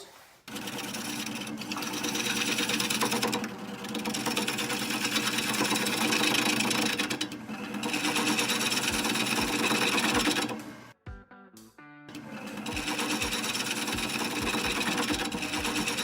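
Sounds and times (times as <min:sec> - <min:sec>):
wood lathe gouge cutting: 0:00.5 - 0:10.9, 0:12.2 - 0:16.0.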